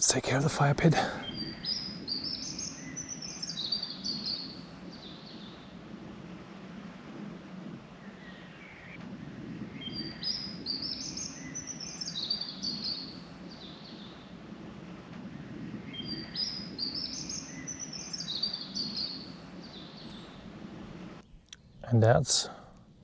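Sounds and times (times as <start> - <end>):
songbird singing: 0.0 - 5.8, 9.6 - 14.4, 15.8 - 23.0.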